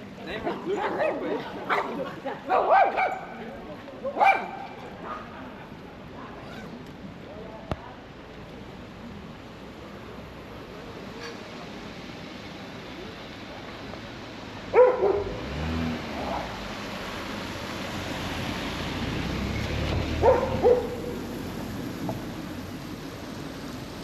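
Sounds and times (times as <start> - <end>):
street ambience: 0.0 - 24.0
dog barking: 1.7 - 1.9, 2.5 - 3.4, 4.2 - 5.2, 14.7 - 15.4, 20.2 - 21.2.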